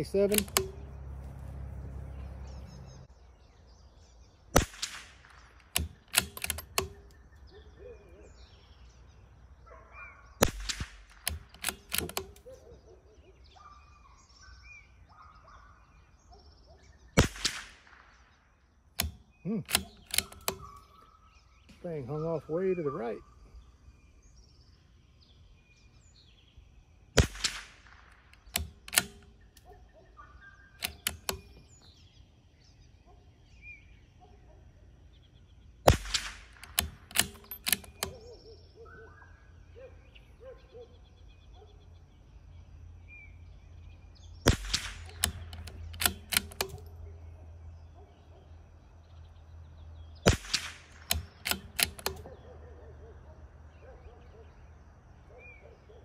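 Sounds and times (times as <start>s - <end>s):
rifle shots: 0.0s - 0.9s, 4.5s - 7.2s, 10.4s - 12.5s, 17.2s - 18.4s, 27.1s - 29.6s, 35.8s - 38.3s, 44.4s - 46.9s, 50.2s - 52.3s
rifle bolt metallic clicks: 0.0s - 1.4s, 4.6s - 8.0s, 10.4s - 12.7s, 19.0s - 21.8s, 27.2s - 29.8s, 30.7s - 32.0s, 35.9s - 38.5s, 44.4s - 47.0s, 50.2s - 52.5s.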